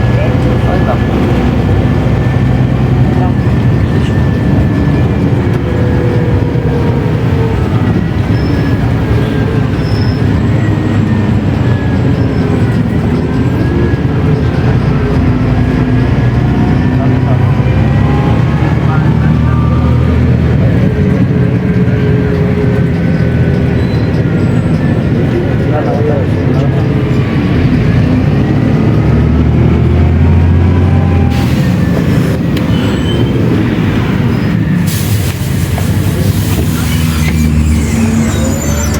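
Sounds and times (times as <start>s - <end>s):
bus engine rumbling: 0.0s - 38.9s
hiss: 34.8s - 37.5s.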